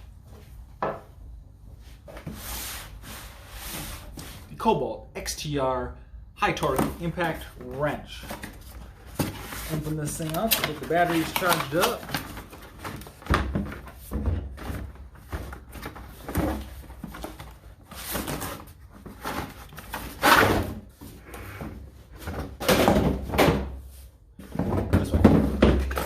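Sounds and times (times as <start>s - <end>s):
packaging rustling and scraping: 7.3s - 22.6s.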